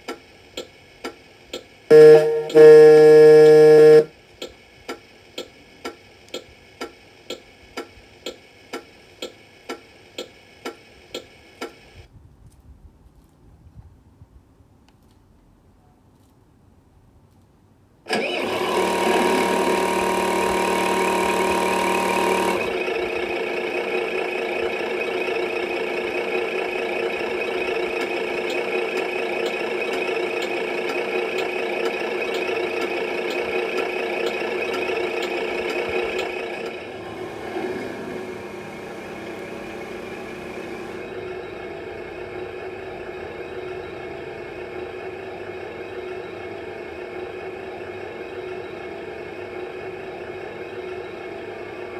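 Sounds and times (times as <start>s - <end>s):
simulated truck engine idling: 18.4s - 29.5s, 36.1s - 46.2s.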